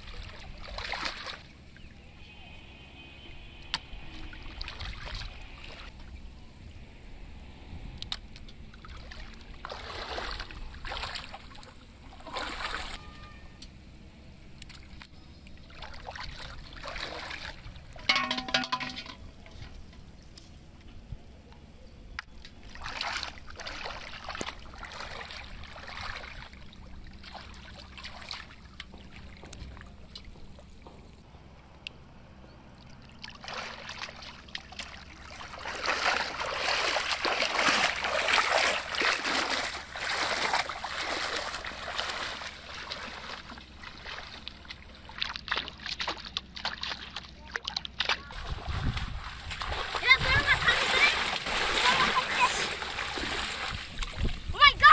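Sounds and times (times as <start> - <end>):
water splashing and sloshing: 0.0 - 2.1, 3.4 - 20.5, 22.2 - 31.2, 32.6 - 54.9.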